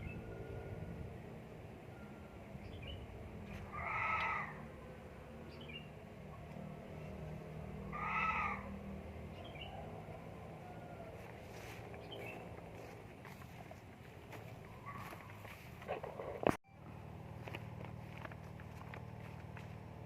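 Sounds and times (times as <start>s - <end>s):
animal crying: 3.5s - 5.1s, 7.8s - 8.9s.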